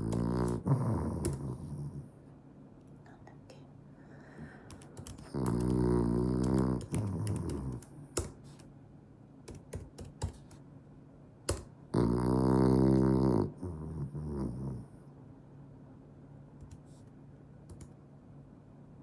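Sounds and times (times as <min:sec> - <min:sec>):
dog snoring: 0:00.0 - 0:02.1, 0:05.2 - 0:07.9, 0:11.9 - 0:14.9.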